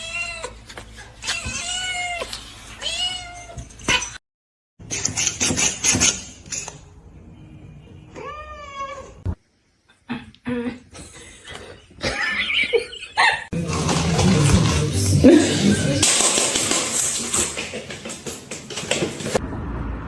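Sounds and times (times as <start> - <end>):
cat meowing: 8.1 - 9.2.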